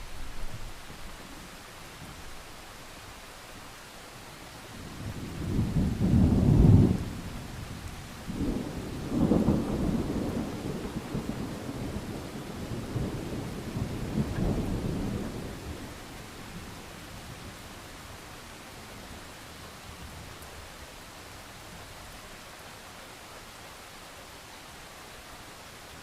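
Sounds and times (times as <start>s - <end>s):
steady rain: 0.0s - 26.0s
thunder rumbling: 4.8s - 17.5s.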